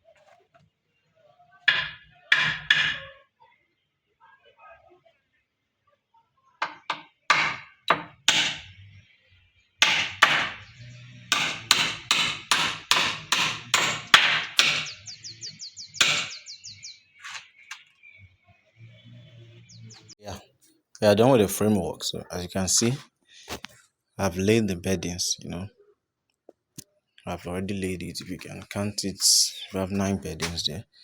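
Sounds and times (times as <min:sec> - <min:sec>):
hammer driving nails into wood: 0:01.7 - 0:03.0, 0:06.6 - 0:08.7, 0:09.8 - 0:10.6, 0:11.3 - 0:15.0, 0:16.0 - 0:16.3.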